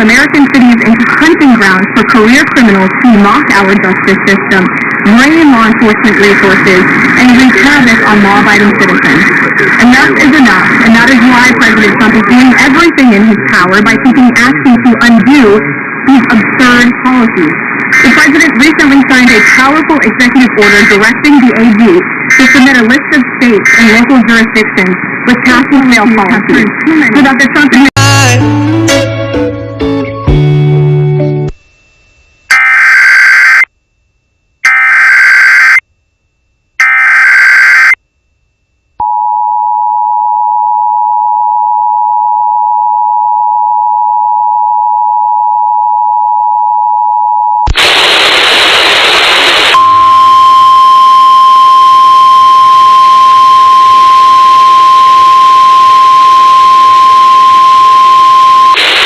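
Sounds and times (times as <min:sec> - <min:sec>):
radio static hiss: 0:00.0 - 0:27.9, 0:32.5 - 0:33.7, 0:36.8 - 0:38.0, 0:47.7 - 0:50.2, 0:58.6 - 0:59.0.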